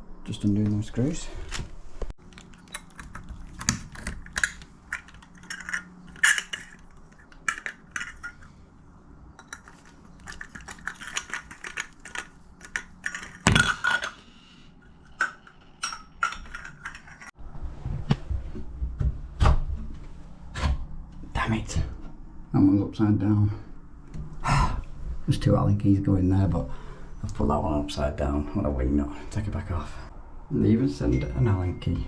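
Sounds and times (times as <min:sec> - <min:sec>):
small metal parts clicking and clinking: 0:02.2 - 0:08.5, 0:09.4 - 0:14.3, 0:15.1 - 0:17.4.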